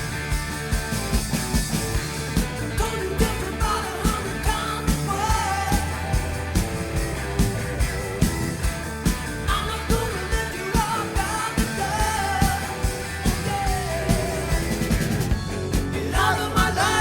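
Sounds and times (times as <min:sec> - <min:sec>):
rock band playing: 0:00.0 - 0:17.0
steady drum beat: 0:00.0 - 0:17.0
lead vocals singing: 0:02.6 - 0:06.6, 0:09.5 - 0:17.0.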